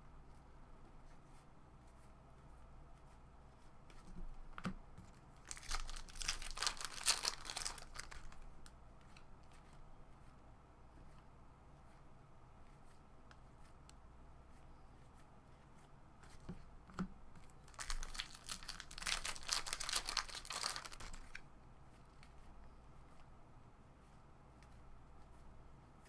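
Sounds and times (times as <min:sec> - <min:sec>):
wrapper tearing and crinkling: 0:05.4 - 0:08.4, 0:17.6 - 0:21.4.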